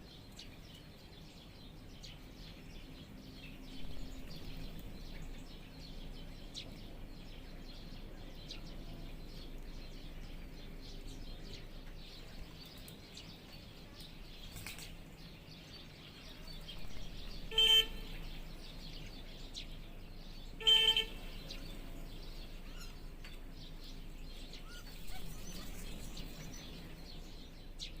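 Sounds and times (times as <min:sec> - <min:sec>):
birds chirping and calling: 0:00.0 - 0:28.0
outdoor background noise: 0:00.0 - 0:28.0
loud horn toots: 0:17.4 - 0:18.2, 0:20.6 - 0:21.2.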